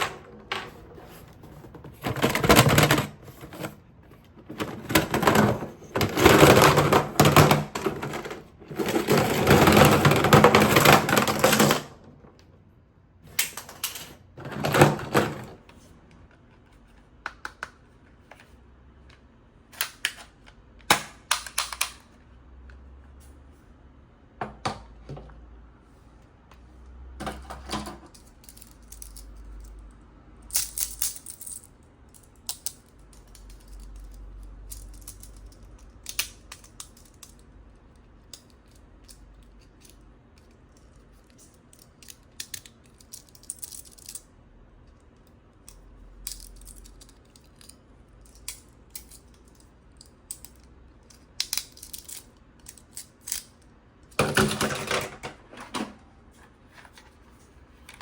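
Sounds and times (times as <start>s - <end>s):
plastic toy clicking and rattling: 38.2s - 44.3s.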